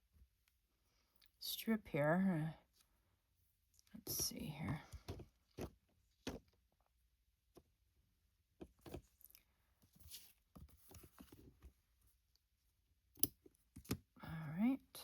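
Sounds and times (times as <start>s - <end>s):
soft fabric rustle: 8.8s - 12.2s.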